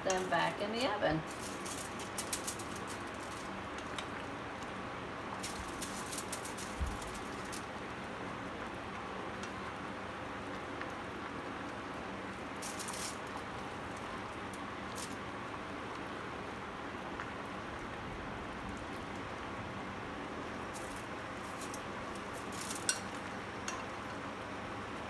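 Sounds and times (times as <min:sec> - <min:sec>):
steady hiss: 0:00.0 - 0:08.3, 0:12.4 - 0:16.3, 0:20.3 - 0:25.0.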